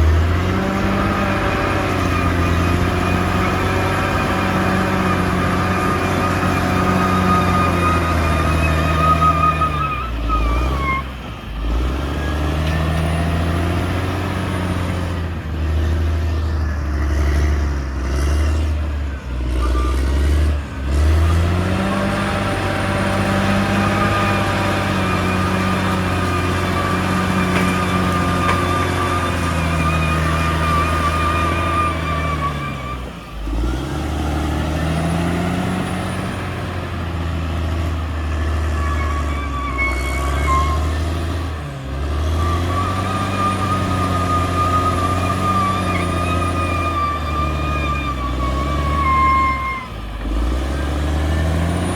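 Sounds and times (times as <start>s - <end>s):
bulldozer diesel engine under load: 0.0s - 51.9s.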